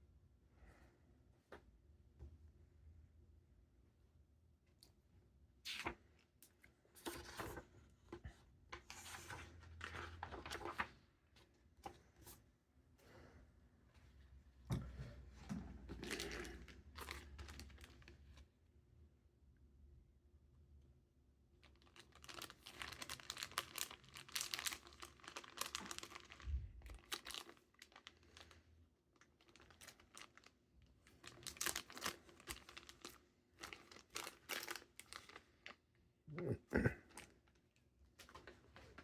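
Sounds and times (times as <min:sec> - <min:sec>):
packaging rustling and crinkling: 0:15.9 - 0:18.4, 0:21.7 - 0:28.6, 0:29.2 - 0:35.8.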